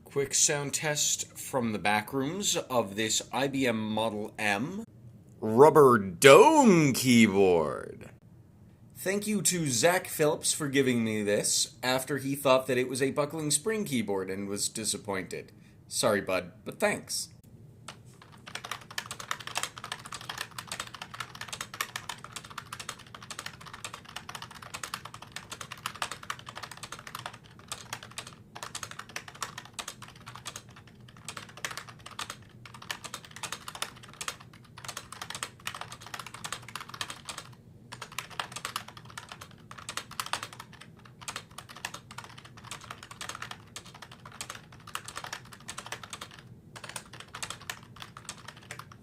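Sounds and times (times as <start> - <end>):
fast keyboard typing: 17.9 - 49.0.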